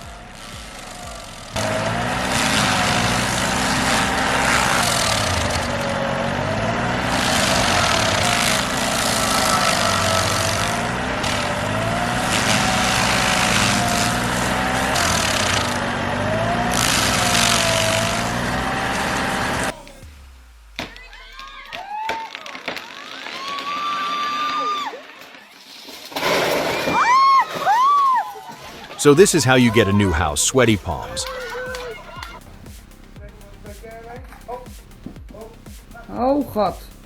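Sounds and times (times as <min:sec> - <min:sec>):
stump grinder grinding wood: 0:00.0 - 0:20.0, 0:29.0 - 0:31.3.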